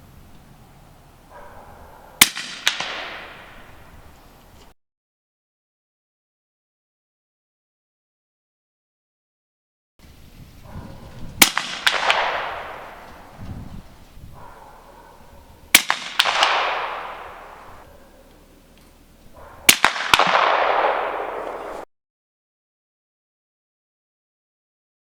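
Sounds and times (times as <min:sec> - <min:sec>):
suppressed rifle shots: 0:02.2 - 0:03.8, 0:11.4 - 0:13.4, 0:15.7 - 0:17.9, 0:19.7 - 0:21.8
gunshot echo: 0:02.2 - 0:04.0, 0:11.4 - 0:13.4, 0:15.7 - 0:17.9, 0:19.6 - 0:21.9
faint sharp cracks: 0:02.2 - 0:04.7, 0:11.4 - 0:13.6, 0:15.7 - 0:19.0, 0:19.7 - 0:21.9.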